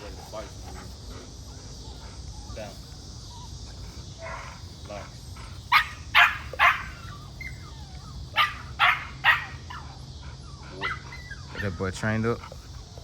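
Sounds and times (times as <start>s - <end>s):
dog barking: 5.7s - 7.6s, 8.3s - 9.8s.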